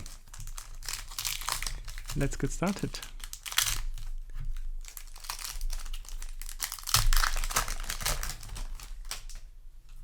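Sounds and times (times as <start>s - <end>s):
foil pack crinkling and tearing: 0.0s - 9.5s.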